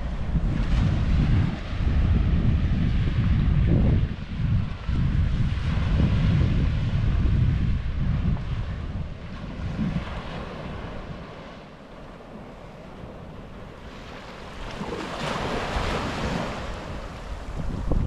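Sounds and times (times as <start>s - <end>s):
wind buffeting microphone: 0.0s - 18.0s
sea waves breaking on beach: 4.2s - 18.0s.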